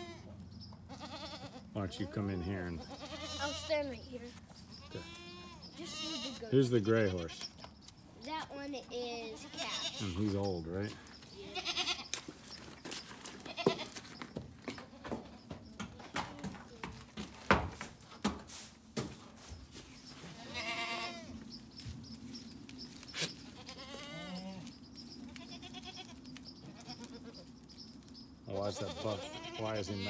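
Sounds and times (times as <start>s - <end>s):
goats bleating: 0.0s - 0.2s, 0.9s - 1.7s, 2.4s - 3.9s, 4.8s - 7.5s, 9.4s - 10.2s, 11.4s - 12.2s, 13.2s - 14.0s, 20.3s - 21.4s, 23.2s - 24.7s, 25.3s - 27.5s, 28.5s - 30.0s.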